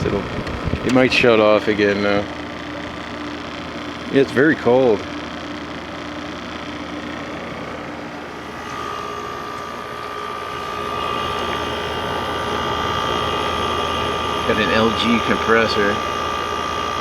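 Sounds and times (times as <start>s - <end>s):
air conditioner running: 0.0s - 17.0s
steady high whine: 0.0s - 17.0s.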